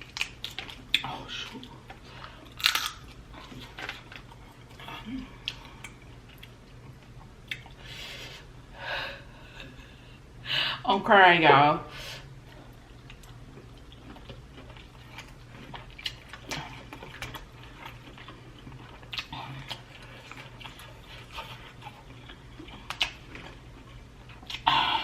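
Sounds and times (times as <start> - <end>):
low steady hum: 0.0 - 25.0
chewing and wet mouth clicks: 5.4 - 7.8, 13.0 - 24.7.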